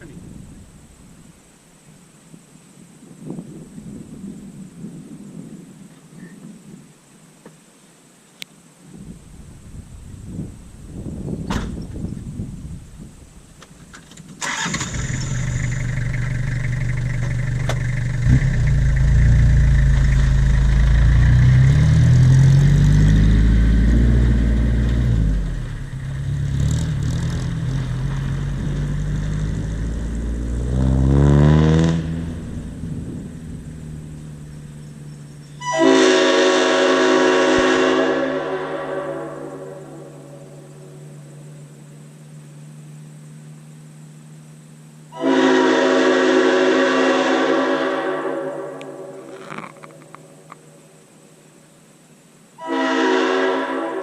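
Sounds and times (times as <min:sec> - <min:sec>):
steady low hum: 0:14.8 - 0:31.2, 0:32.0 - 0:35.6, 0:37.5 - 0:45.2
locomotive air horn blasts: 0:35.6 - 0:40.5, 0:45.1 - 0:49.3, 0:52.6 - 0:54.0.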